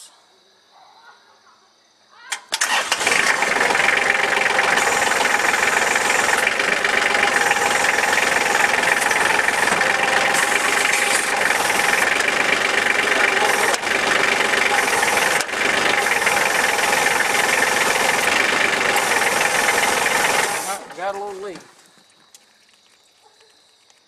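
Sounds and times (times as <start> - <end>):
tractor diesel engine running: 2.5 - 21.7.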